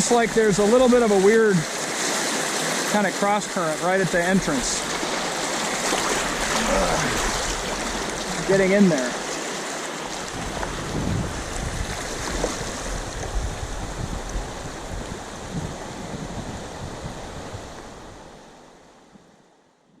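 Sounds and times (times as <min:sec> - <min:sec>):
rushing whitewater: 0:00.0 - 0:19.1.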